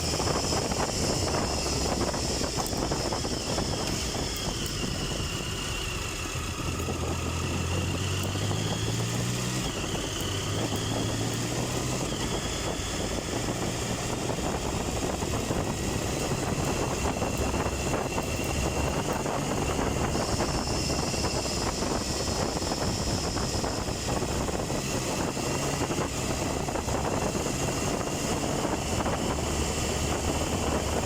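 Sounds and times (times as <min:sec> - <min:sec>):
motorcycle engine running steadily: 0:00.0 - 0:31.0
wind noise on microphone: 0:00.0 - 0:31.0.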